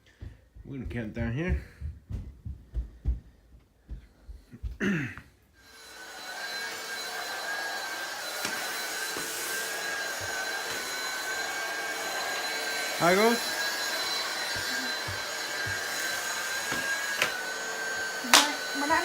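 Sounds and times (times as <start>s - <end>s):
electric blower running: 5.6s - 19.0s
person speaking: 12.9s - 13.5s, 14.5s - 15.3s, 18.2s - 19.0s.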